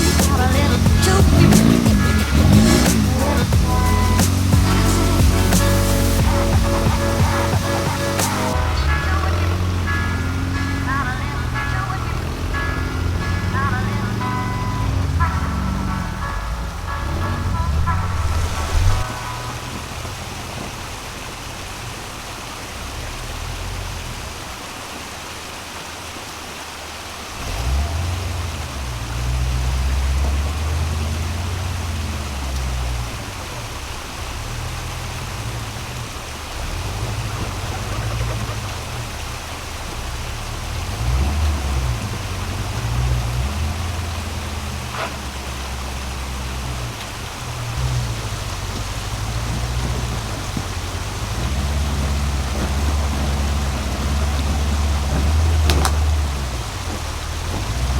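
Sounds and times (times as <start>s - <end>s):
low rumble: 0.0s - 22.5s, 40.2s - 57.9s
rushing water: 0.0s - 57.9s.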